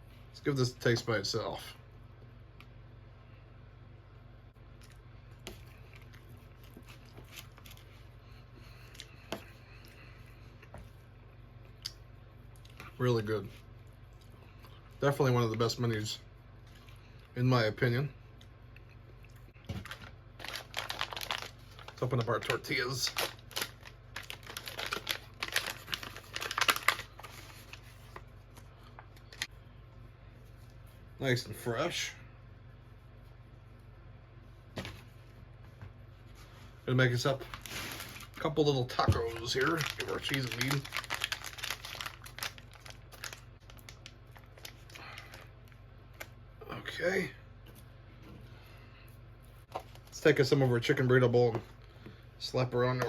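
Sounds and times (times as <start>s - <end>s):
steady low hum: 0.0s - 53.0s
person chewing quietly: 13.8s - 15.0s, 18.3s - 19.6s
plastic pouch crinkling: 19.8s - 28.2s, 37.4s - 46.3s.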